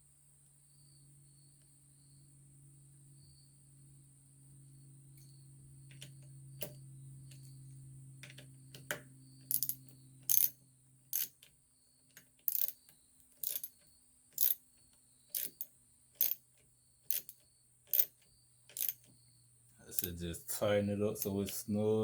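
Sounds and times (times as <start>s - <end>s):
socket ratchet clicking: 9.5s - 11.5s, 12.2s - 12.8s, 13.4s - 13.8s, 14.4s - 14.6s, 15.3s - 16.4s, 17.1s - 19.1s, 19.9s - 20.2s.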